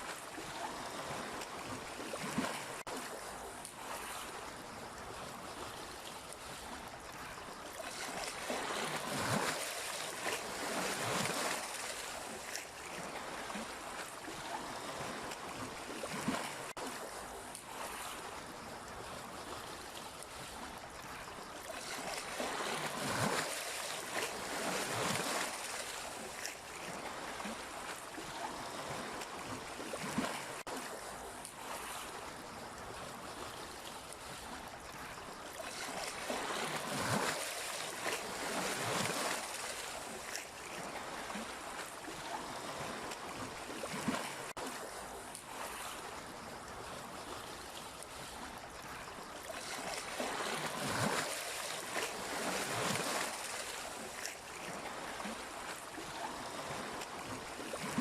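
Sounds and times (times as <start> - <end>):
sea waves washing in: 0.0 - 58.0.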